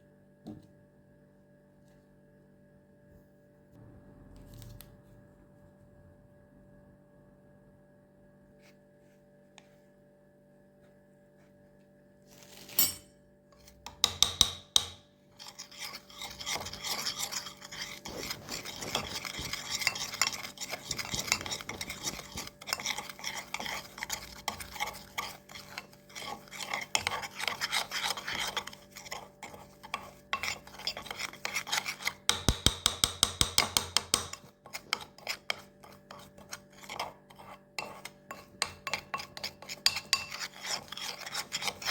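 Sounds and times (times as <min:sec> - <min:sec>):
spoon stirring paste in dish: 0:12.3 - 0:41.9.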